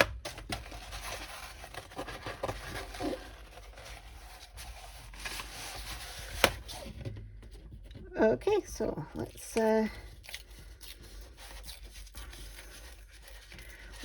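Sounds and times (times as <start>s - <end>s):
packaging and paper rustling: 0.0s - 7.8s, 9.1s - 14.0s.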